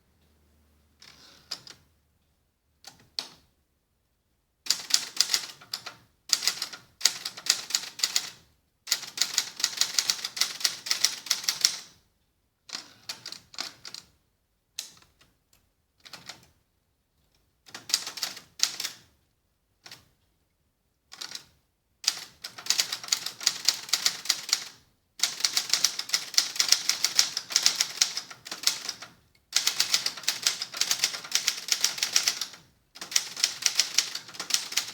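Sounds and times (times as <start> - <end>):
manual typewriter clacking: 22.1 - 34.9.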